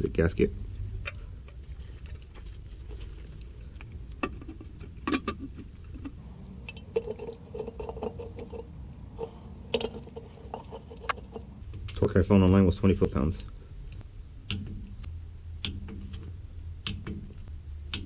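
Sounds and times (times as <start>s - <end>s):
small scraping sounds: 1.1s - 11.7s.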